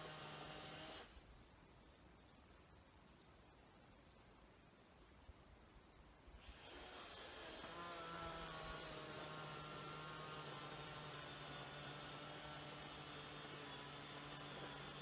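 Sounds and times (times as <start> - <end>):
electric chainsaw motor whining: 0.0 - 1.1, 6.4 - 15.0.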